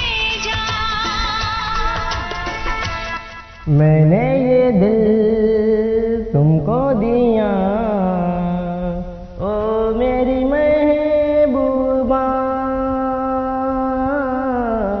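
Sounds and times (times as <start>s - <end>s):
man singing a long note: 3.7s - 15.0s.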